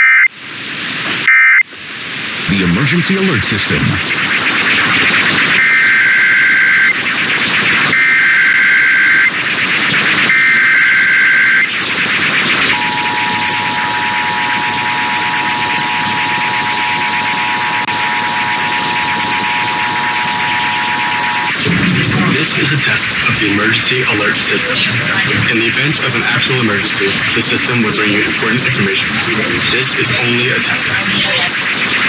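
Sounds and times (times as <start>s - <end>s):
radio hiss: 0.0s - 32.0s
screeching digital header tones: 2.5s - 32.0s
two-tone attention signal: 10.3s - 11.7s, 12.7s - 21.6s.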